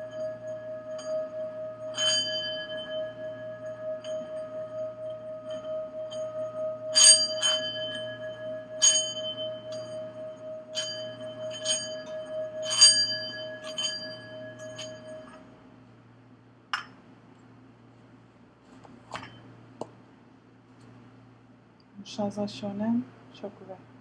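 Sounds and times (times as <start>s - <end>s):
bell-like chimes: 0.0s - 15.4s
singing bowl ringing: 0.0s - 15.6s.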